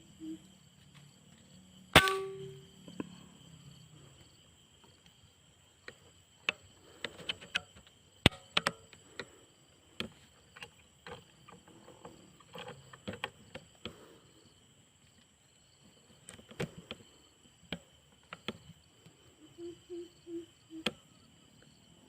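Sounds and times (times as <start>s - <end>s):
insects chirring: 0.0s - 22.0s.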